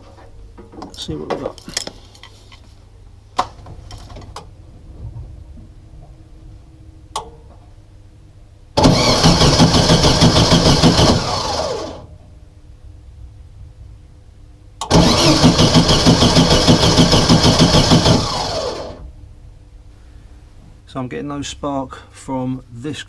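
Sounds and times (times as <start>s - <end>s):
starter motor cranking engine: 8.8s - 12.1s, 14.9s - 19.0s.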